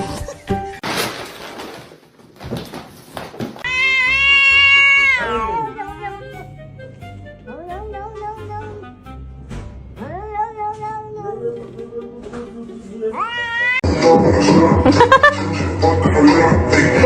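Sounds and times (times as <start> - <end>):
cat meowing: 3.6 - 6.2, 7.6 - 8.8, 13.2 - 13.8
background music: 3.7 - 17.0.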